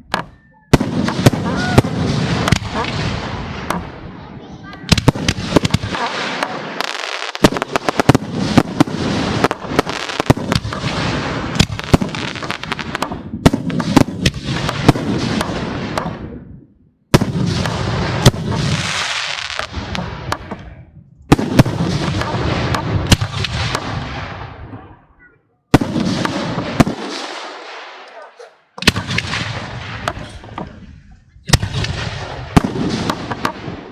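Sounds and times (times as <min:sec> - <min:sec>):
firework shell bursts booming: 0:00.1 - 0:04.1, 0:04.8 - 0:16.4, 0:21.3 - 0:25.0, 0:28.8 - 0:30.8, 0:31.5 - 0:33.9
fireworks crackling: 0:00.7 - 0:16.2, 0:17.1 - 0:20.6, 0:21.3 - 0:24.7.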